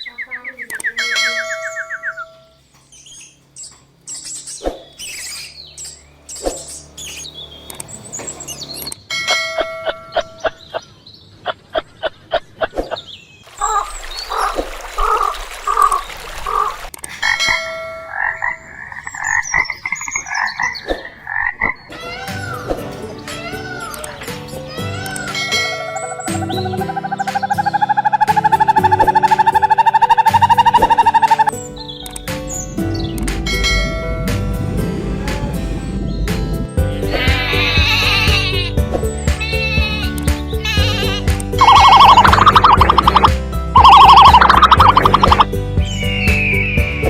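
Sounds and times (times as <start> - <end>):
animal chirps: 0.0 - 9.0, 17.1 - 33.9, 37.1 - 47.0
repeated pitched animal calls: 16.5 - 47.0
short pulsed animal calls: 37.4 - 46.8.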